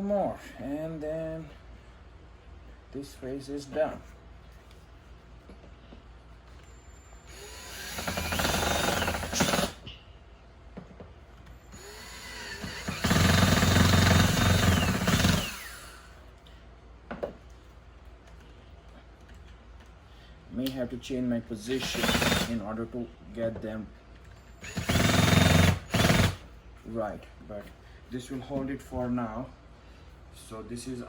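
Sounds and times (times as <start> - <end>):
power drill driving screws: 7.3 - 9.8, 11.7 - 16.1, 21.8 - 22.6, 24.6 - 26.4.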